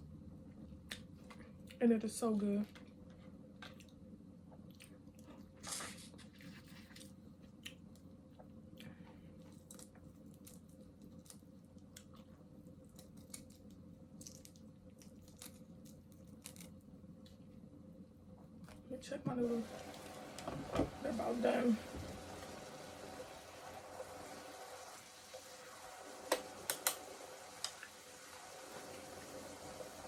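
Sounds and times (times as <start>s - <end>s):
chewing with mouth smacks: 3.6s - 5.6s.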